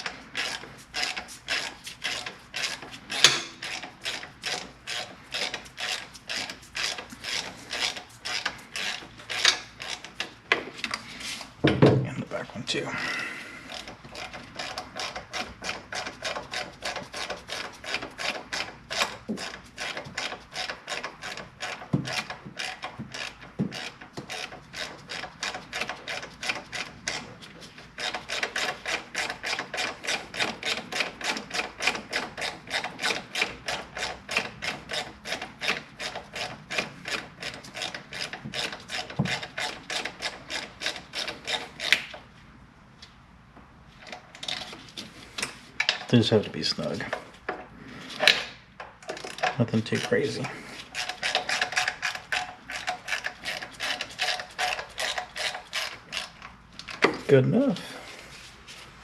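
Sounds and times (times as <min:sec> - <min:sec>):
hand ratchet clicking: 0:00.0 - 0:11.0, 0:13.7 - 0:42.2, 0:48.2 - 0:57.2
tool knocks: 0:11.6 - 0:12.1.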